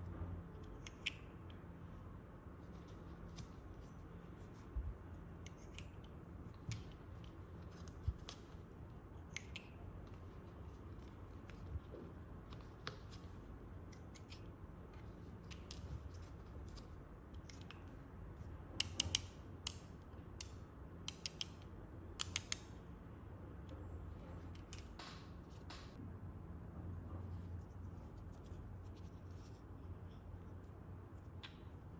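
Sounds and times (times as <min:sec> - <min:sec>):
steady low hum: 0:00.0 - 0:31.9
sharp clicks of revolver parts: 0:18.8 - 0:22.8.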